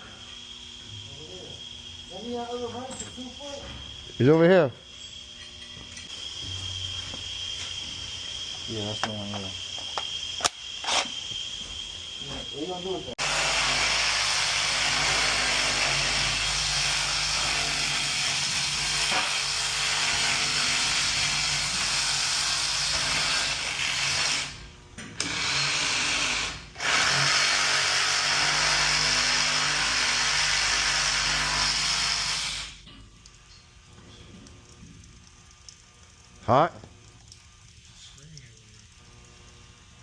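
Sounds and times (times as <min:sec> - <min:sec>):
reciprocating saw cutting pipe: 0:25.2 - 0:32.8.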